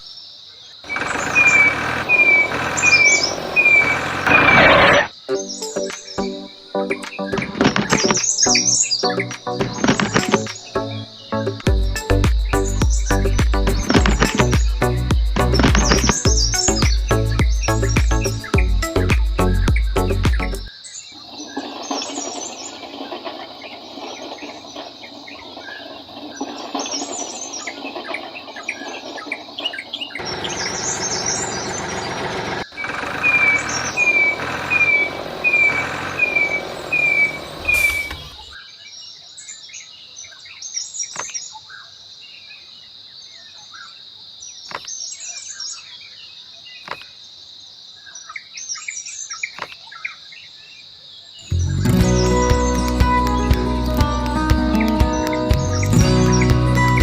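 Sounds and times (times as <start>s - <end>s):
high insect drone: 0.0s - 6.5s, 7.2s - 38.6s
birds chirping: 0.0s - 41.9s, 51.2s - 57.0s
rushing noise: 0.9s - 5.1s
short falling chirps: 30.2s - 38.6s.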